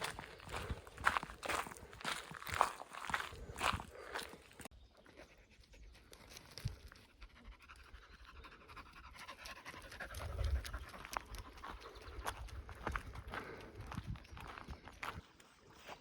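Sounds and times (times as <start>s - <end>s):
dog panting: 7.0s - 12.3s.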